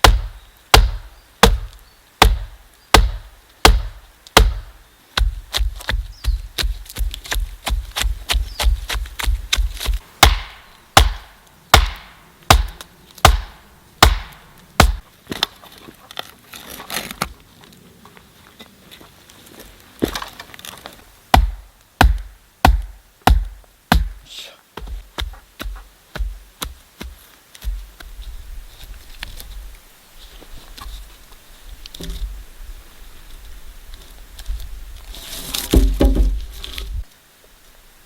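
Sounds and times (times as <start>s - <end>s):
hand tool striking wood: 0.0s - 15.5s, 21.3s - 24.2s, 24.8s - 28.1s, 35.5s - 36.5s.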